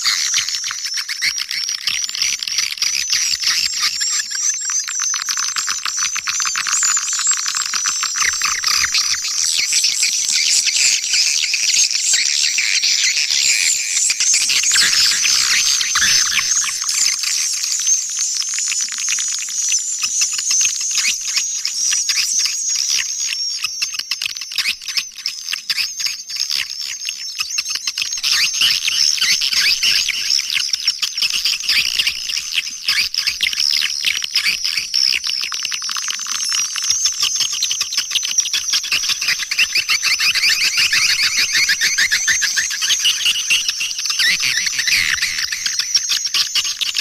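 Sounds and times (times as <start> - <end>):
swiftlets twittering: 38.7 - 47.0.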